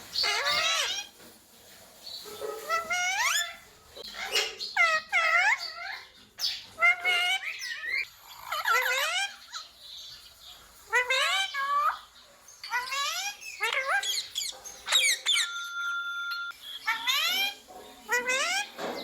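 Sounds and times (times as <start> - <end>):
parrot calls and talking: 0.1 - 1.2, 2.2 - 19.0.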